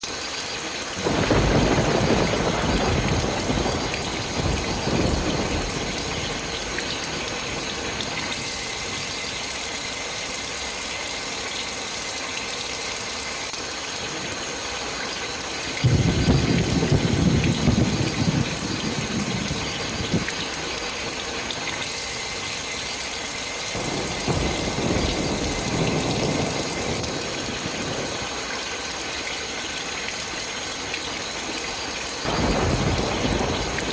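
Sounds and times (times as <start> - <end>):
rain-like hiss: 0.0 - 33.9
low rumbling thunder: 1.0 - 9.1, 15.8 - 20.8, 23.8 - 28.4, 32.2 - 33.9.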